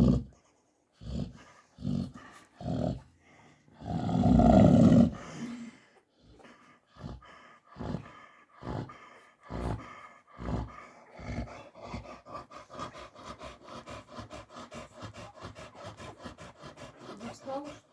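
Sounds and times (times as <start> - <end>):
dog snoring: 0.0 - 0.3, 3.7 - 5.5, 7.0 - 17.8
dog panting: 0.1 - 17.9.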